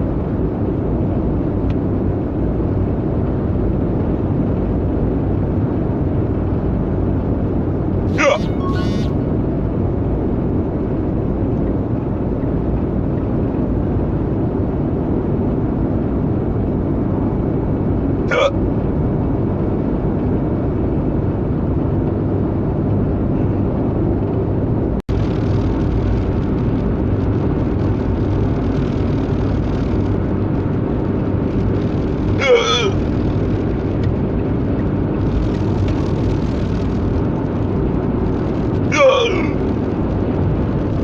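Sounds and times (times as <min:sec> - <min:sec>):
car interior rumble: 0:00.0 - 0:41.0
person hiccuping: 0:08.1 - 0:09.2, 0:18.3 - 0:18.6, 0:32.4 - 0:33.0, 0:38.9 - 0:39.6.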